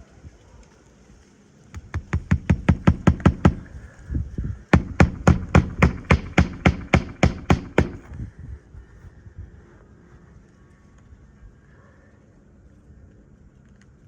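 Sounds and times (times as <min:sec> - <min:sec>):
hammer driving nails: 0:01.8 - 0:03.8, 0:04.8 - 0:08.1.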